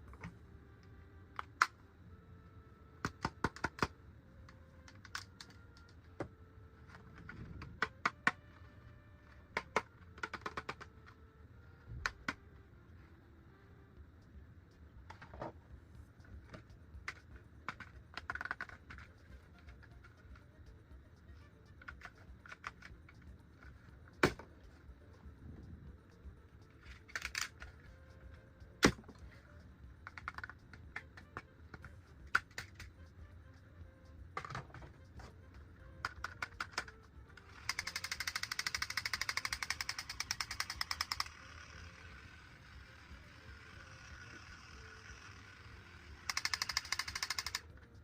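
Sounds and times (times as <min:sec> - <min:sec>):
plastic toys clicking and tapping: 0:03.0 - 0:06.3, 0:06.9 - 0:08.4, 0:09.3 - 0:11.2, 0:11.9 - 0:12.4, 0:16.2 - 0:25.2, 0:26.6 - 0:33.2, 0:34.3 - 0:42.3, 0:43.0 - 0:48.0.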